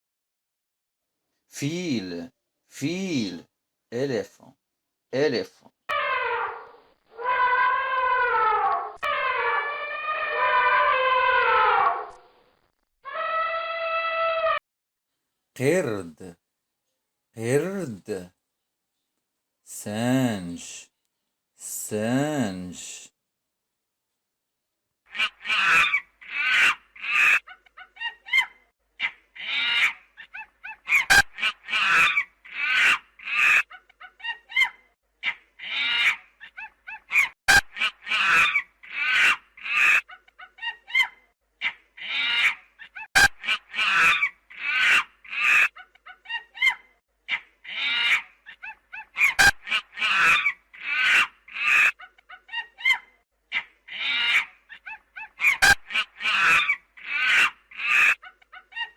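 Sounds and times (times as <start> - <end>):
monkey high repeated cries: 5.9 - 12.2, 13.0 - 14.6, 25.1 - 58.9.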